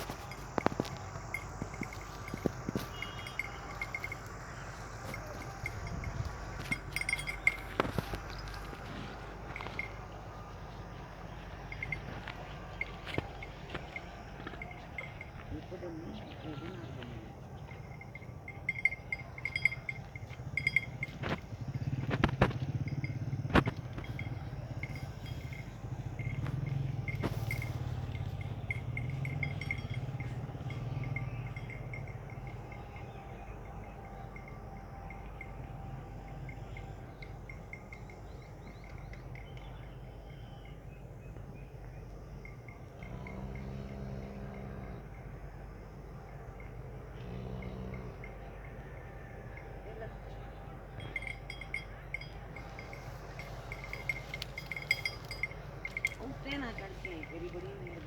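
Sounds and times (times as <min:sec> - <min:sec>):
sharp clicks and clinks: 0:00.0 - 0:10.1
engine idling: 0:00.0 - 0:58.0
faint rapid ticking chirps: 0:00.0 - 0:58.0.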